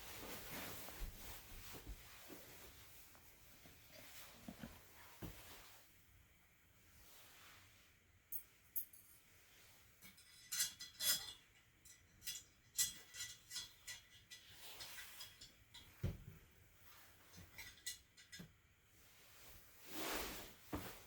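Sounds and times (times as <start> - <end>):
metal and ceramic utensils clinking: 10.0 - 15.9.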